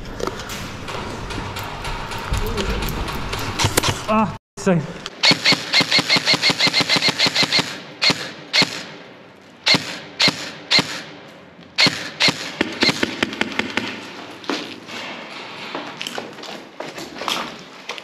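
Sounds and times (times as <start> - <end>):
airsoft guns firing: 5.2 - 9.0, 9.6 - 11.2, 11.8 - 14.0.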